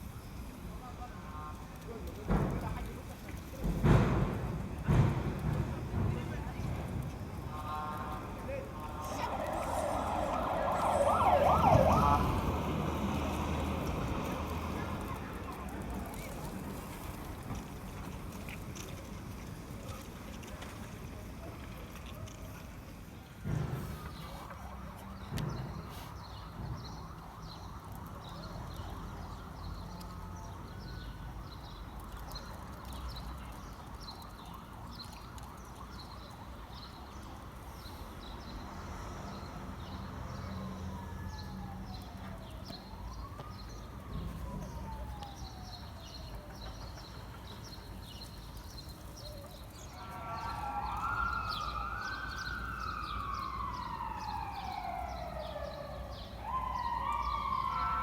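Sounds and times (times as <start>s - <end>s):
emergency siren wailing: 7.5s - 15.2s, 39.8s - 47.9s, 49.0s - 58.0s.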